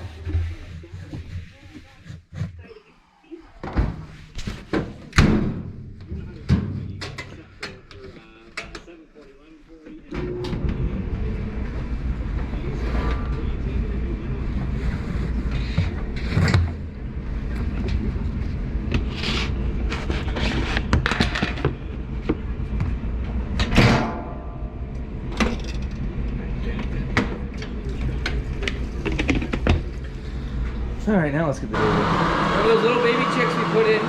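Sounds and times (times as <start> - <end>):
knocks and clanks: 26.7 - 30.1.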